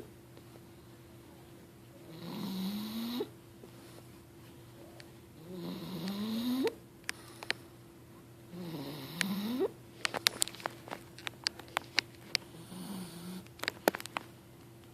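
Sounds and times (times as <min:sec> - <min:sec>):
drawn-out snores: 0:02.1 - 0:03.3, 0:05.4 - 0:06.8, 0:08.5 - 0:09.7, 0:12.6 - 0:13.4.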